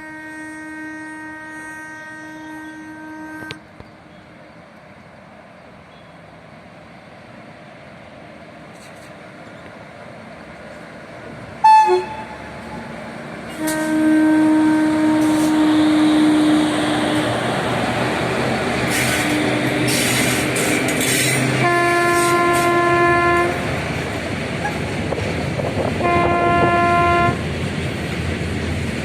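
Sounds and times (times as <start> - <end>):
locomotive horn blast: 0.0 - 3.7, 11.6 - 17.8, 18.8 - 23.9, 26.0 - 27.4
freight train running: 0.0 - 29.0.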